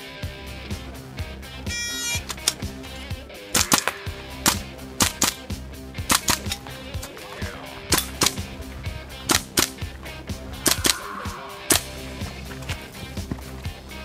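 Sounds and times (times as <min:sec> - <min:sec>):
airsoft rifle shots: 0:01.7 - 0:02.7, 0:03.5 - 0:08.6, 0:09.2 - 0:09.9, 0:10.6 - 0:12.1.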